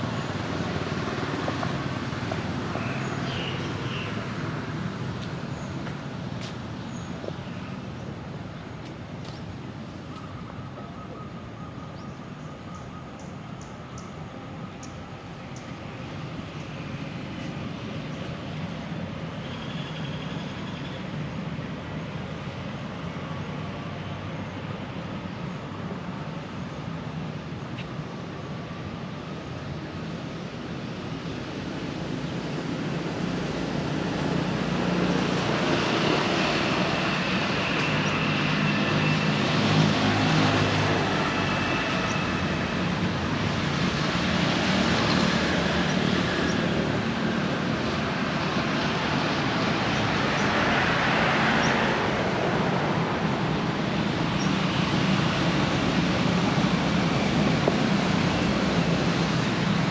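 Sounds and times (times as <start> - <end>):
traffic engine hum and road rumble: 0.0 - 59.9
faint high bird chirps: 10.1 - 15.8.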